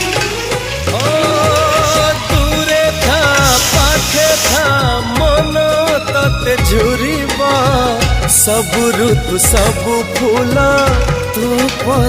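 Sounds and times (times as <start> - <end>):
song with sung melody and beat: 0.0 - 12.0.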